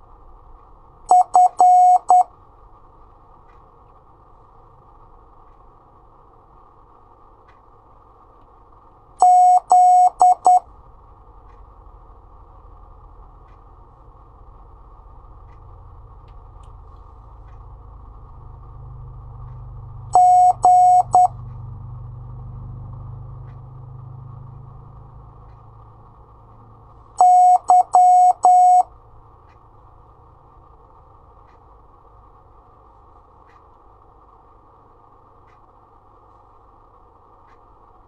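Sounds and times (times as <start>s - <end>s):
faint hiss and hum: 0.0s - 38.0s
morse code beeps: 1.1s - 2.3s, 9.2s - 10.6s, 20.1s - 21.4s, 27.2s - 28.9s.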